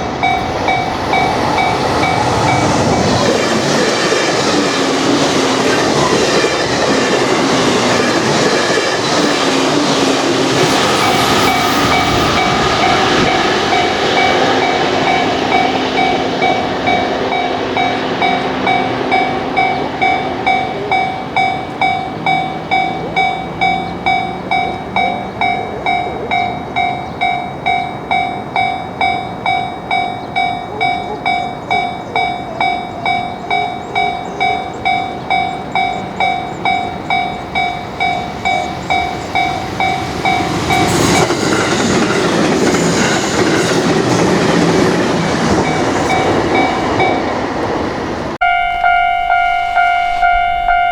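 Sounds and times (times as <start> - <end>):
passing train running noise: 0.0 - 50.9
level crossing bell ringing: 11.4 - 41.3, 48.4 - 50.9.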